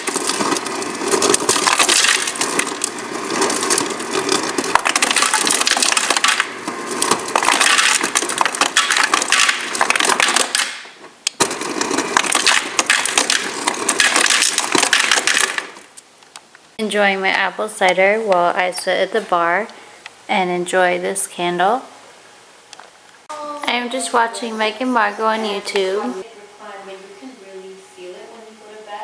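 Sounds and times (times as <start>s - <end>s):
ice clattering and crunching: 0.0s - 15.9s.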